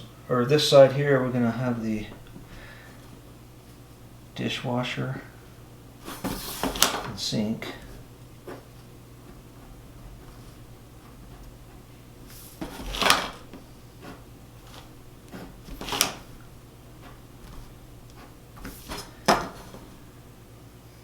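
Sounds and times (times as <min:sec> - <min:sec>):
pencil scraping on paper: 0:06.0 - 0:06.8, 0:07.8 - 0:19.9
light taps and rubs: 0:06.0 - 0:20.1.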